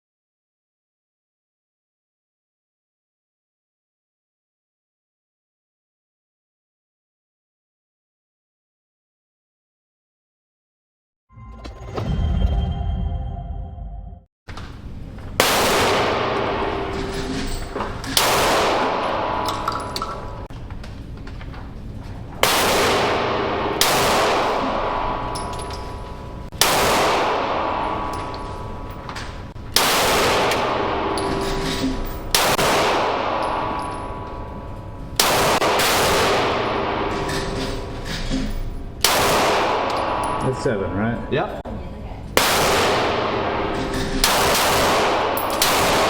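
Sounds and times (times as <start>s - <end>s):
loud bangs with ringing echo: 15.4s - 20.5s, 22.4s - 40.9s, 42.4s - 46.0s.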